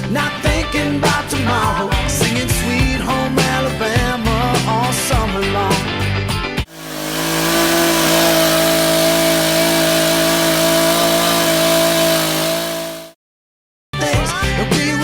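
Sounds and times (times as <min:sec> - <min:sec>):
motor running steadily: 0:06.7 - 0:13.1.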